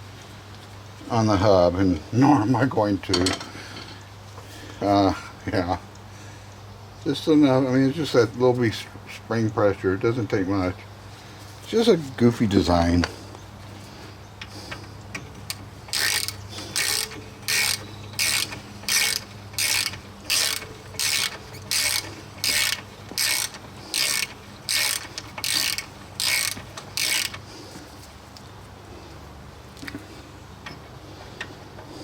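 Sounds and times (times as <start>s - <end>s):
ratchet wrench clicking: 15.2s - 27.5s.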